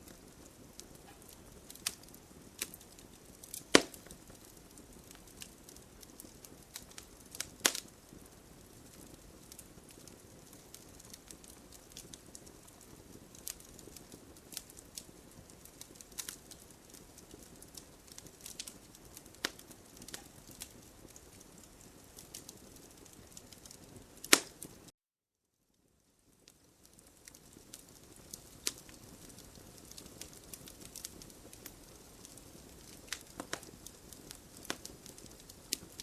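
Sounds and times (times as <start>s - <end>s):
campfire crackling and popping: 0.0s - 24.9s, 25.8s - 36.0s
soft fire hiss: 0.0s - 24.9s, 25.7s - 36.0s.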